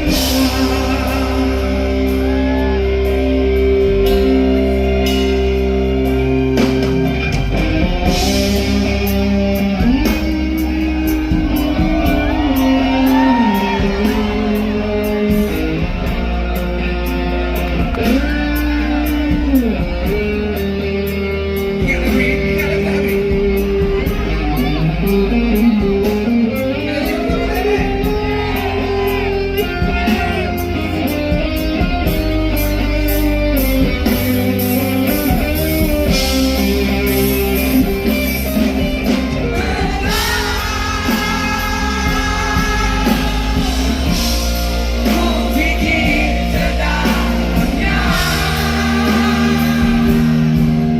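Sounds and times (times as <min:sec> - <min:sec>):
drum beat: 0:00.0 - 0:04.6, 0:35.3 - 0:50.9
bass: 0:00.0 - 0:50.9
guitar bending notes: 0:00.0 - 0:50.9.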